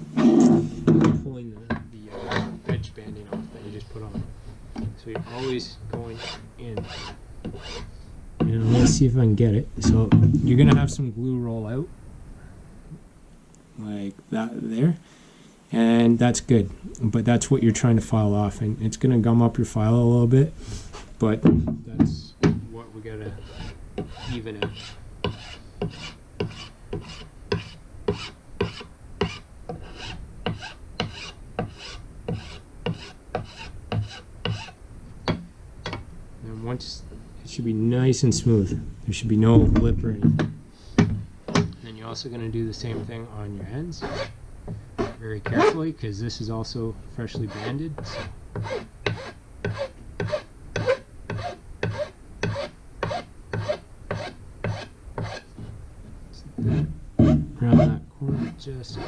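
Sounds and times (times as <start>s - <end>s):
hand file rasping on wood: 5.1s - 7.9s, 23.3s - 34.8s, 44.0s - 44.3s, 47.3s - 55.5s.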